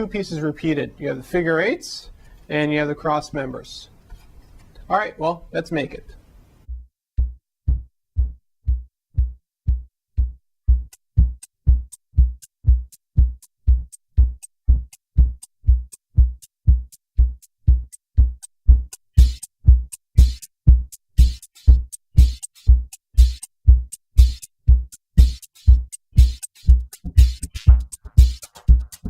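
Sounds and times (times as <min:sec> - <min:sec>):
drum machine kick: 0:06.6 - 0:29.0
hi-hat ticks: 0:10.2 - 0:29.0
electronic music: 0:19.2 - 0:19.5, 0:21.2 - 0:23.5, 0:24.2 - 0:29.0.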